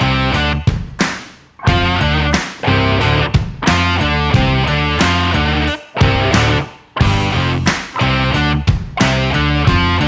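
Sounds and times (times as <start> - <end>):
electric guitar chord stabs: 1.7 - 8.6.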